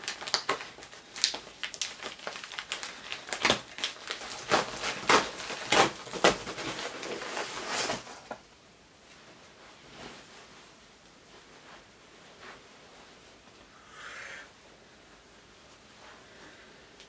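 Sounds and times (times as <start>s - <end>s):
packaging crinkling: 0.0s - 8.4s.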